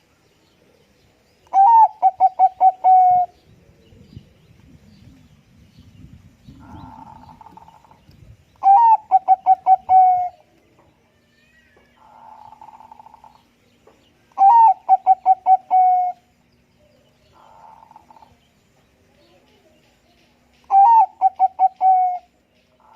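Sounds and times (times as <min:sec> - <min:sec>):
dove cooing: 0:01.5 - 0:03.8, 0:08.6 - 0:10.5, 0:14.4 - 0:16.3, 0:17.3 - 0:18.4, 0:20.7 - 0:22.9.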